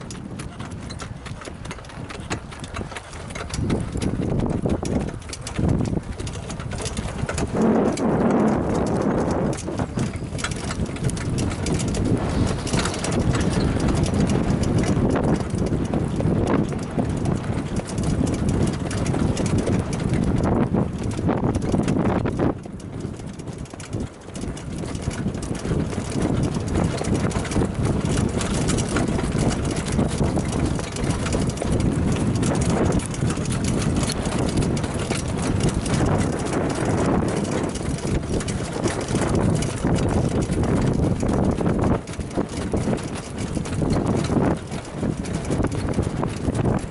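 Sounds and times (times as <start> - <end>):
cart rattling: 0.0 - 46.9
horse hoofbeats trotting: 0.0 - 46.9
wind rumble on microphone: 0.0 - 46.9.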